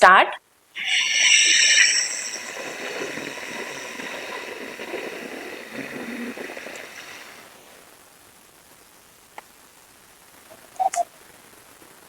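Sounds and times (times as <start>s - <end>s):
slow hissing breath: 0.8s - 8.0s.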